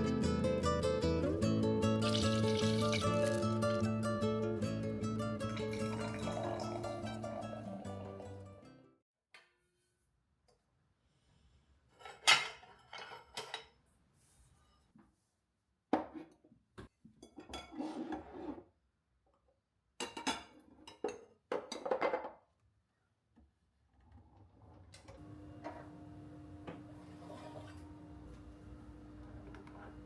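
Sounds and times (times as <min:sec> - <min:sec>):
dishes and cutlery clinking: 0:12.0 - 0:13.8.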